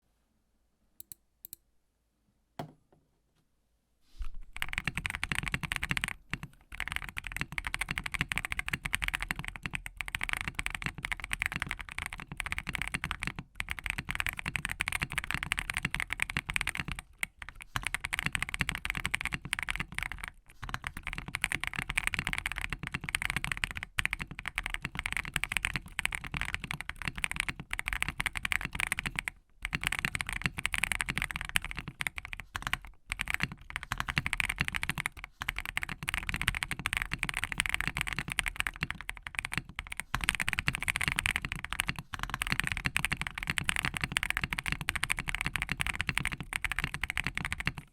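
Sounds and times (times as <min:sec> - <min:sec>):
mechanical keyboard typing: 0:04.6 - 0:47.9.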